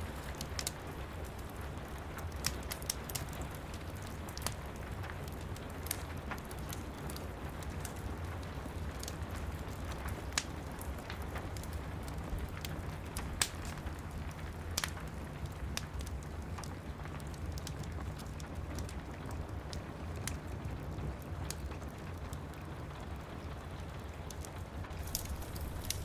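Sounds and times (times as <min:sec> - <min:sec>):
wood fire crackling and popping: 0:00.0 - 0:26.0
rain hissing: 0:24.9 - 0:26.0.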